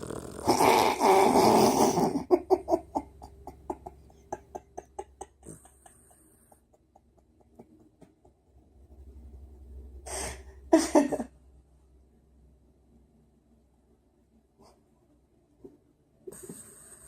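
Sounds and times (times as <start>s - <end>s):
dog snoring: 0.0s - 2.3s.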